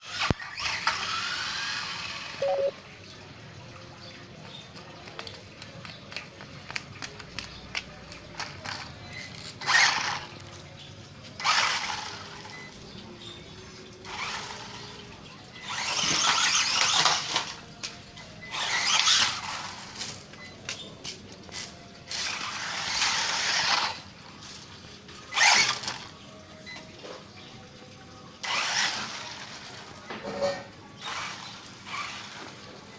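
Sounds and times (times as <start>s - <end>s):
toy car motor whining: 0.0s - 2.7s, 8.4s - 10.6s, 11.3s - 12.8s, 14.0s - 20.4s, 21.5s - 24.7s, 25.3s - 26.1s, 28.4s - 30.0s, 31.0s - 32.9s.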